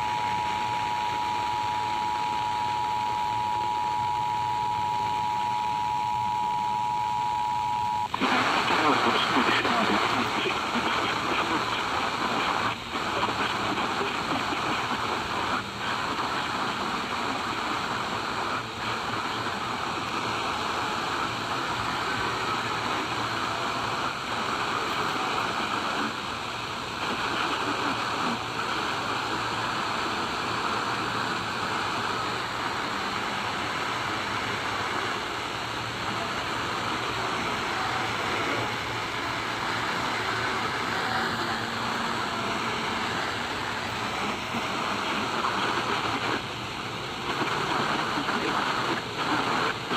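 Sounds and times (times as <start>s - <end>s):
steady rushing hiss: 8.2s - 49.9s.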